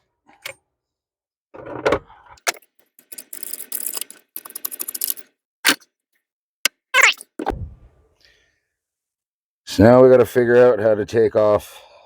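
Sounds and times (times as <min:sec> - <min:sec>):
metallic rattling and clatter: 0:02.4 - 0:05.8
sharp clicks: 0:02.5 - 0:05.8, 0:06.7 - 0:07.5.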